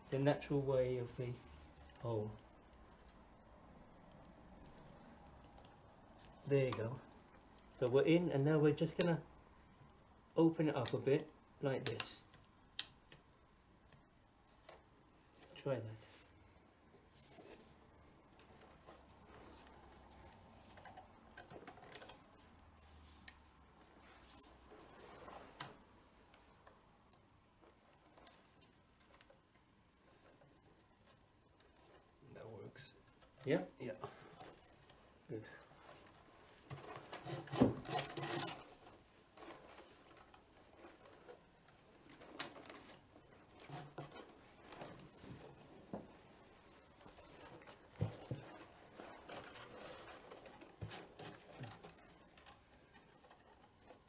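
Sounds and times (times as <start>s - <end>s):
leather strap rustling and scratching: 17.0s - 26.0s, 34.3s - 54.0s.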